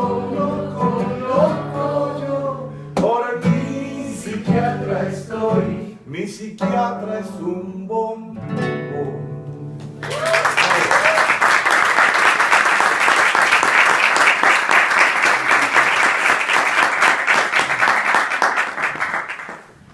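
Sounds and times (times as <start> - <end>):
person whooping: 10.0 - 11.4
audience applause: 10.0 - 19.8.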